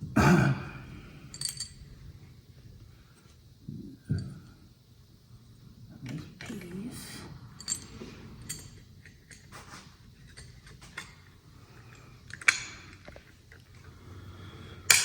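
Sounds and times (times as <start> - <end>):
small parts clicking and rattling: 1.3 - 1.8, 7.6 - 13.9.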